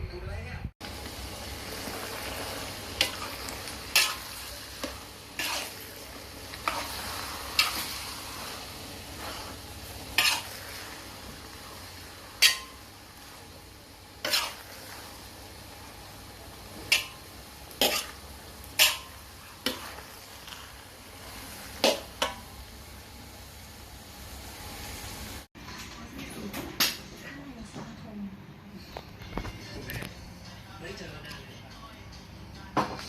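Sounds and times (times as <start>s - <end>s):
food sizzling in a pan: 0.8s - 25.5s
metal spatula scraping pan: 1.8s - 12.8s, 14.2s - 15.2s, 17.8s - 22.4s.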